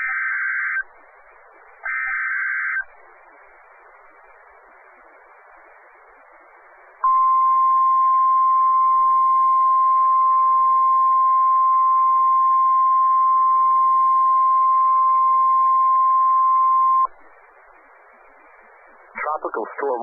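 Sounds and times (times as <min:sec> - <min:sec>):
faint radio hiss: 0:00.0 - 0:20.0.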